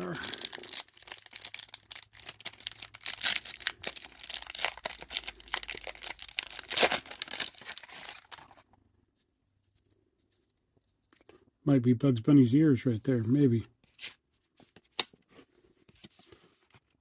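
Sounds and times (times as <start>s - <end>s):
wrapper tearing and crinkling: 0.0s - 8.6s.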